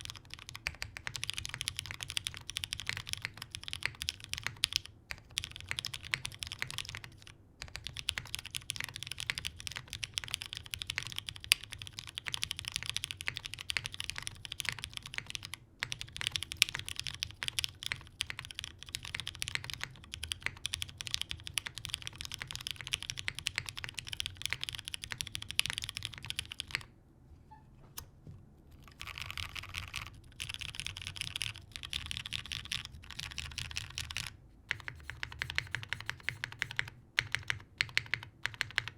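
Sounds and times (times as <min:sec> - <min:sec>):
mechanical keyboard typing: 0:00.0 - 0:26.9, 0:28.7 - 0:38.9.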